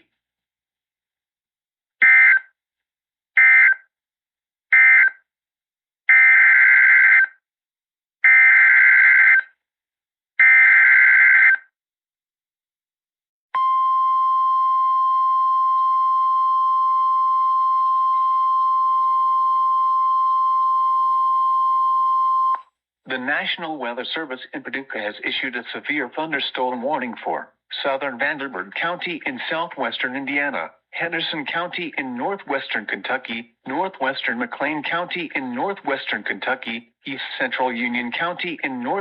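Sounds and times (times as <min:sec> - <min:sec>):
loud steady alarm tone: 0:13.6 - 0:22.6.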